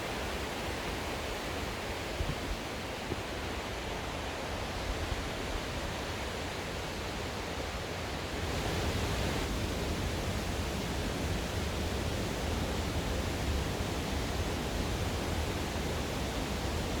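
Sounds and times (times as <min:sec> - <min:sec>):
stream water rushing: 0:08.2 - 0:17.0.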